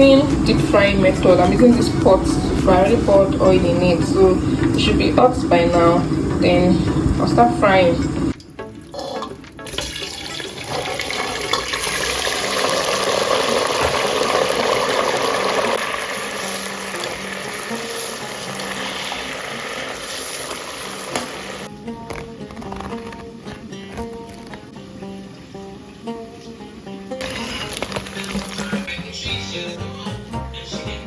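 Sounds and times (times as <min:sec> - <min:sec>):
food sizzling in hot oil: 0:08.9 - 0:21.7, 0:27.2 - 0:28.9.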